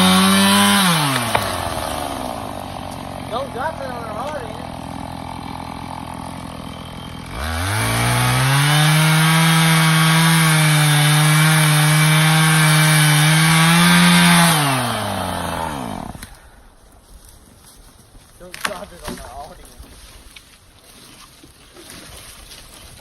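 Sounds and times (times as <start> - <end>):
chainsaw cutting log: 0.0 - 16.6, 18.4 - 19.9.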